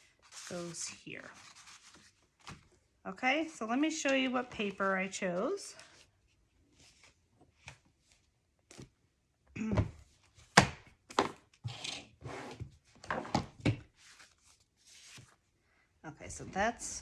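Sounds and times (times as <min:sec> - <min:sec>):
paper rustling: 0:00.1 - 0:02.8, 0:03.4 - 0:08.9, 0:14.0 - 0:15.4.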